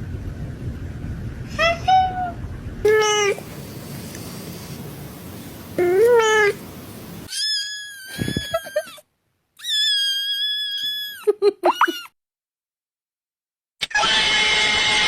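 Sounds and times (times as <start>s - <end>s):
cats meowing: 2.9s - 3.5s, 5.8s - 6.6s.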